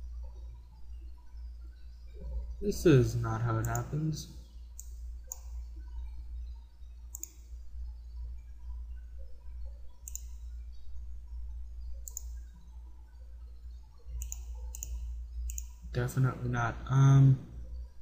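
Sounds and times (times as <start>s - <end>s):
low electrical hum: 0.0s - 18.0s
computer mouse clicking: 3.6s - 4.0s, 4.8s - 6.0s, 7.1s - 7.5s, 9.9s - 10.7s, 11.9s - 12.6s, 14.1s - 15.9s.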